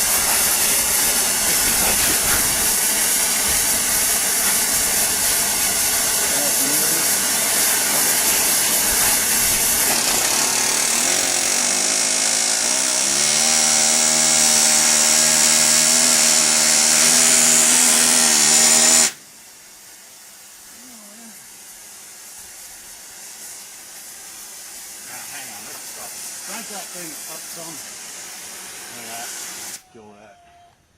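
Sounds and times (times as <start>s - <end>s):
motor whine: 0.0s - 19.2s
power tool hissing: 0.0s - 29.8s.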